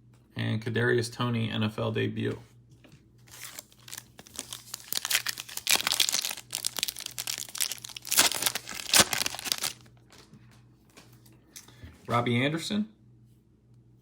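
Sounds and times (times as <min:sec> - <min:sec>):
plastic wrapper crinkling and tearing: 0:03.3 - 0:10.3.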